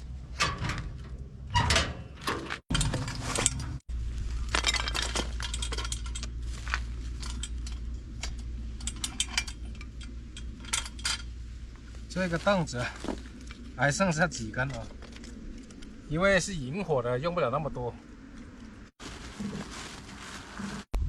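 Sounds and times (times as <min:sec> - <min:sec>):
steady low rumble: 0:02.7 - 0:18.9
cooking gear clinking and clattering: 0:04.4 - 0:11.4.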